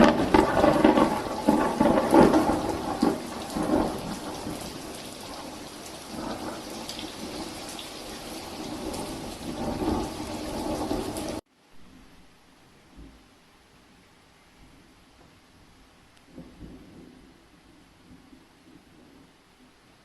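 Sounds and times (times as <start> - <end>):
heavy rain pouring: 0.0 - 11.4.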